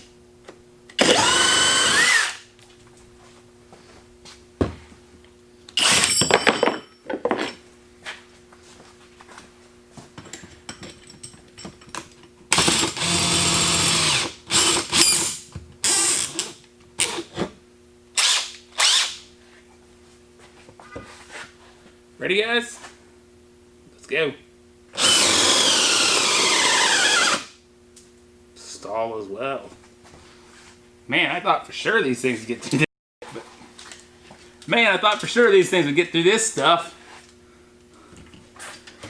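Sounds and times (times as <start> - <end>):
drill clicking burst: 1.0 - 2.4, 5.8 - 6.1, 12.5 - 17.1, 18.2 - 19.2, 25.0 - 27.5
hammer drill motor whining: 1.0 - 2.4, 5.8 - 6.1, 12.5 - 15.3, 15.9 - 17.2, 18.2 - 19.2, 25.0 - 27.5.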